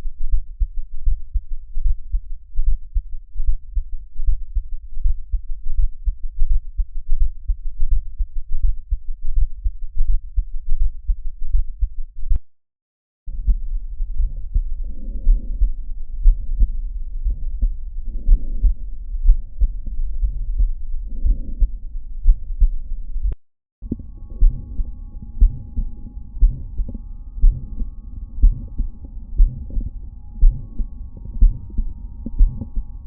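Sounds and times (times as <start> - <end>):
heartbeat through stethoscope: 0.0 - 12.4, 13.3 - 33.0
heart murmur: 13.3 - 33.0
faint steady hum: 13.4 - 33.0.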